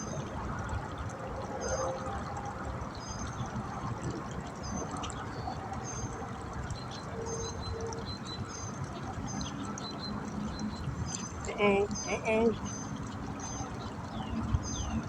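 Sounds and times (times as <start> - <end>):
small birds chirping: 4.6 - 15.0
low outdoor background hiss: 8.4 - 15.0.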